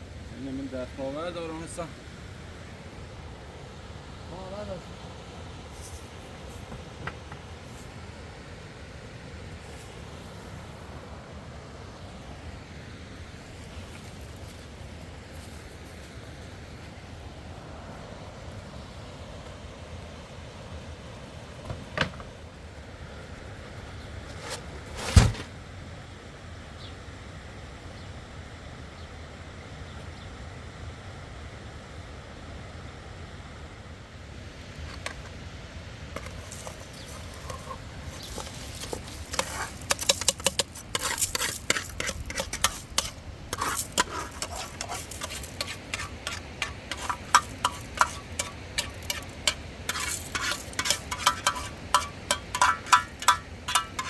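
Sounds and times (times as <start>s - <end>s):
loud thump: 25.0s - 25.5s
metallic clinks and scrapes: 36.2s - 54.0s.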